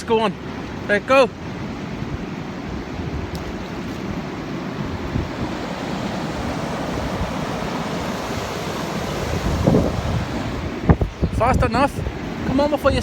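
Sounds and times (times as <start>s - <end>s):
wind buffeting microphone: 1.9s - 13.0s
waterfall rushing: 4.4s - 11.4s.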